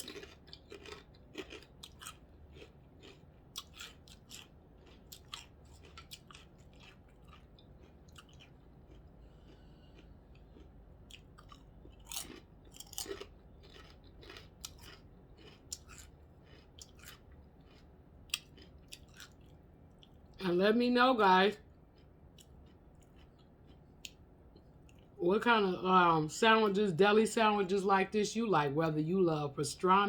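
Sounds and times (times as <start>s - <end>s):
chewing with wet mouth clicks: 0.0s - 20.3s, 21.7s - 25.2s.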